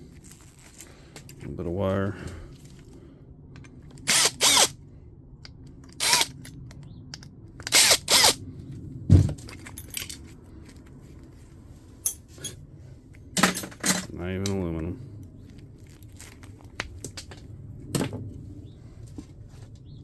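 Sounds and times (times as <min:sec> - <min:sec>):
metal scrap parts clinking: 0:13.4 - 0:14.1.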